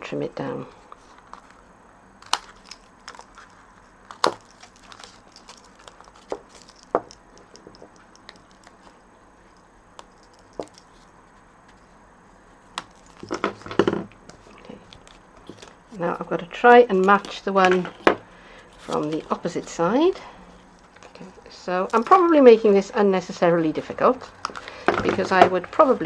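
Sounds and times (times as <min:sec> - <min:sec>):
card stock rustling: 0:02.2 - 0:09.0, 0:18.7 - 0:20.1.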